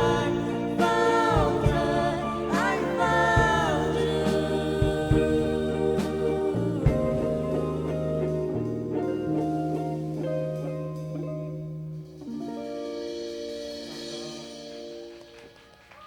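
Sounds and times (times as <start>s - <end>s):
drum hits: 0.0s - 7.7s
electric guitars ringing chords: 0.0s - 15.8s.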